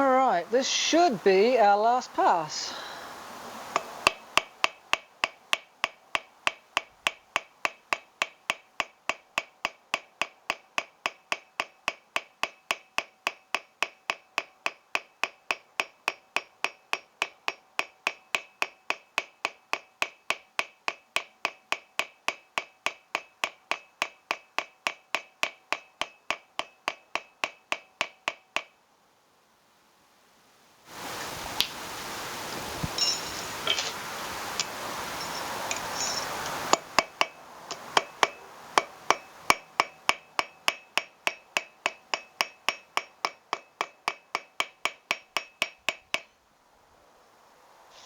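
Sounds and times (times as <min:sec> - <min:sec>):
hammer striking metal on anvil: 0:03.8 - 0:28.7, 0:33.0 - 0:33.9, 0:35.2 - 0:46.3.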